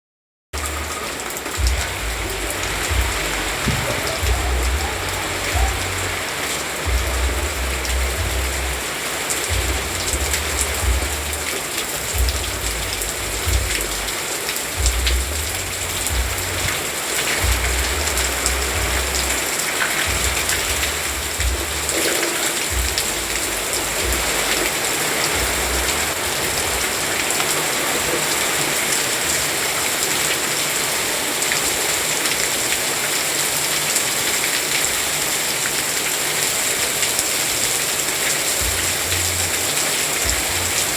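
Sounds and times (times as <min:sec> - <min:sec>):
heavy rain pattering: 0:00.6 - 0:40.9
deep low rumble: 0:01.6 - 0:06.2, 0:06.9 - 0:08.8, 0:09.5 - 0:11.6, 0:12.2 - 0:14.1, 0:14.8 - 0:16.8, 0:20.1 - 0:22.0, 0:22.7 - 0:24.7.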